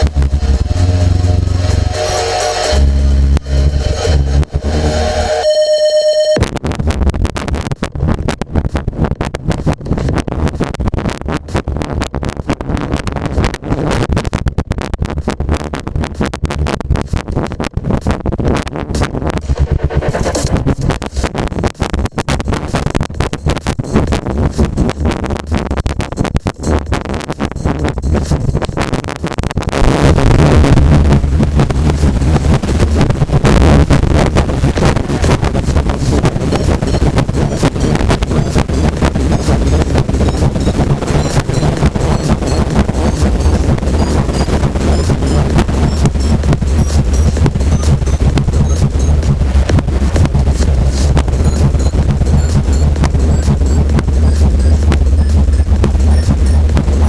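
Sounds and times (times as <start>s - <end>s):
harsh choppy crackling noise: 0.0s - 5.6s, 6.3s - 57.0s
brief steady tone: 0.0s - 6.4s
steady bass hum: 0.0s - 57.0s.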